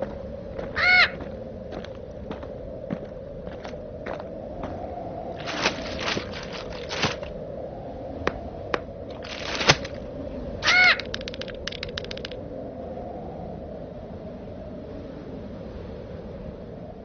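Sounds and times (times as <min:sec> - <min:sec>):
bird call rising and falling: 0:10.6 - 0:12.4
clicks: 0:11.0 - 0:12.4.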